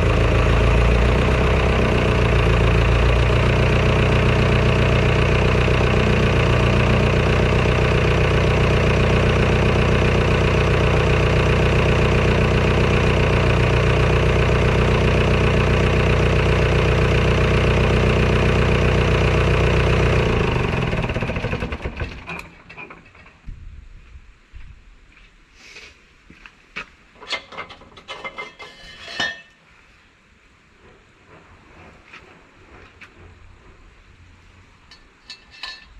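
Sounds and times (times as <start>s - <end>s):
tractor engine idling: 0.0s - 23.4s.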